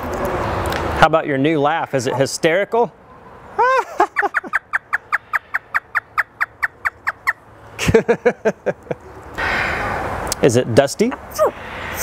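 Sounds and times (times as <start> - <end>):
low laugh-like parrot calls: 3.6 - 7.2
parrot imitating a laugh: 3.6 - 7.2.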